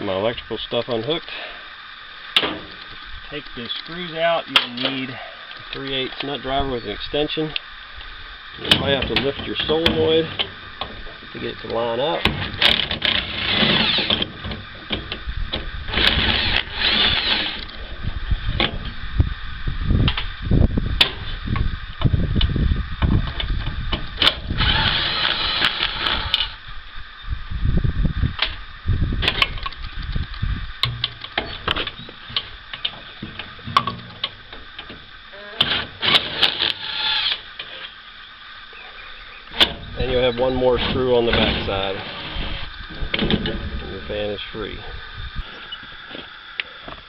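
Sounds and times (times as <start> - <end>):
nut driver whirring: 8.6 - 17.8, 21.0 - 26.6, 30.8 - 38.0.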